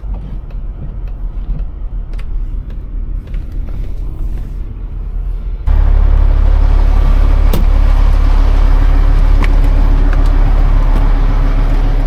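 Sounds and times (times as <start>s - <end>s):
vehicle engine droning: 5.6s - 12.0s.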